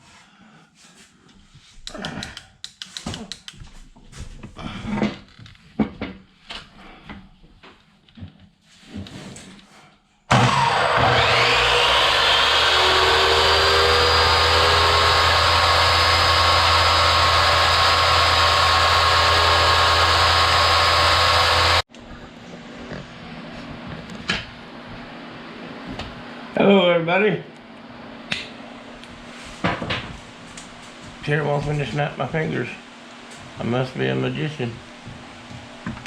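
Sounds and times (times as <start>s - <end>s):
electric saw motor whining: 10.3s - 21.8s.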